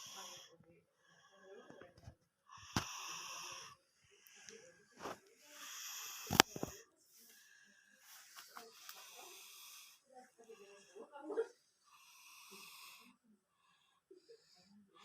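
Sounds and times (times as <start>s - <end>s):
person snoring: 5.5s - 6.8s, 8.8s - 10.0s, 11.9s - 13.2s.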